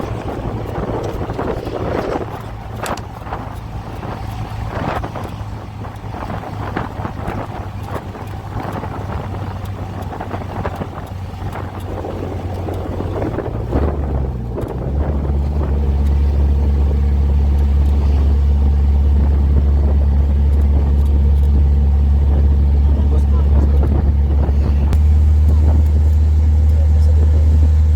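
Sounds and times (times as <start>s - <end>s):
vehicle engine drone: 0.0s - 27.9s.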